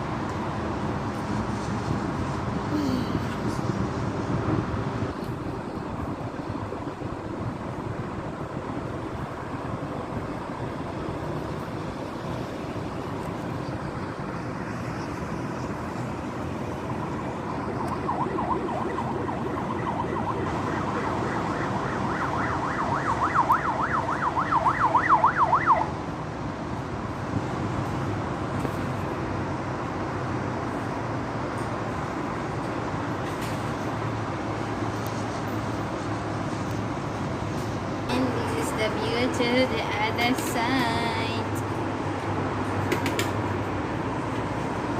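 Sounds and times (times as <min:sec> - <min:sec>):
city traffic noise: 0:00.0 - 0:44.9
emergency siren yelping: 0:16.2 - 0:26.0.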